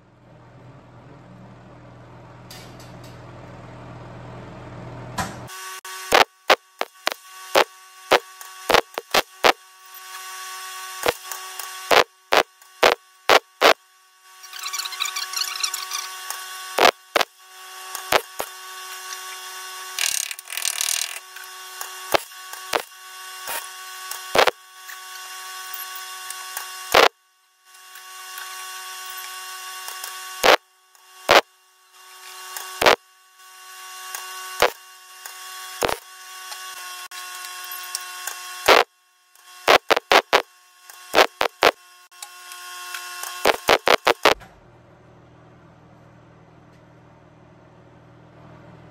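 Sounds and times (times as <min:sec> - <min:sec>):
welder arc crackling and hissing: 0:05.6 - 0:13.8, 0:14.4 - 0:33.0, 0:34.0 - 0:41.8, 0:42.5 - 0:44.4.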